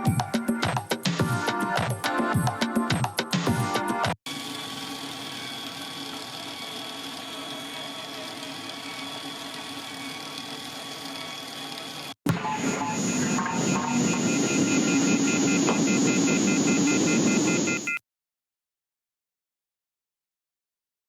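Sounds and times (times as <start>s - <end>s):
music: 0.0s - 4.2s, 12.3s - 15.2s
steady droning noise: 12.3s - 17.9s
faint high whine: 12.4s - 18.0s.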